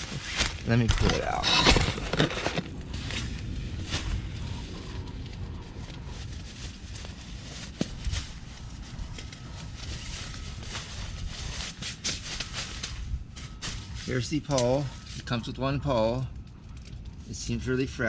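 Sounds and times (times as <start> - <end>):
nylon fabric rustling: 0.0 - 0.8.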